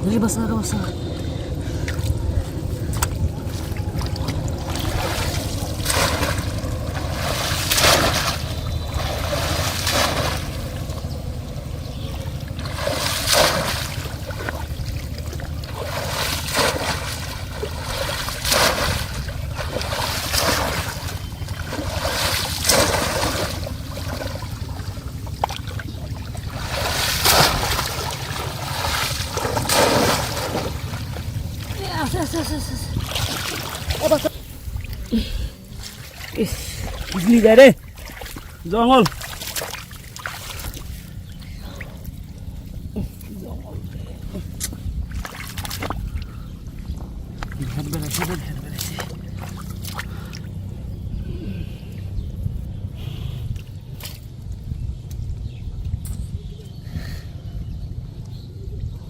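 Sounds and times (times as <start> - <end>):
steady low rush: 0.0 - 47.8
fish trap splashing shallow water: 2.9 - 35.1, 35.7 - 42.0, 44.6 - 46.4, 47.5 - 50.6.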